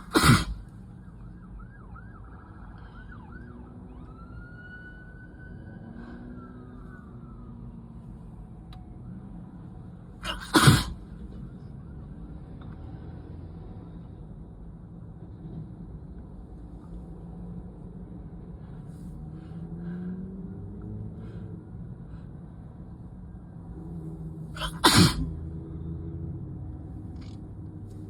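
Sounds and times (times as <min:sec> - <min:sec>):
person sneezing: 0:00.0 - 0:00.6, 0:10.2 - 0:11.0, 0:24.6 - 0:25.3
faint siren wailing: 0:00.0 - 0:10.0, 0:11.1 - 0:14.0.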